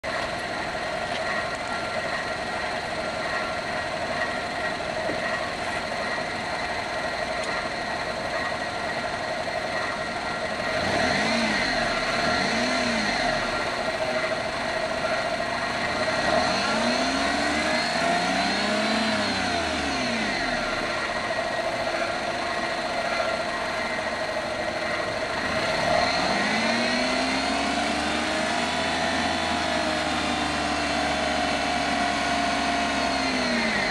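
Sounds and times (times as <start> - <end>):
car engine idling and revving: 0.0 - 33.9
engine rattle: 0.0 - 33.9.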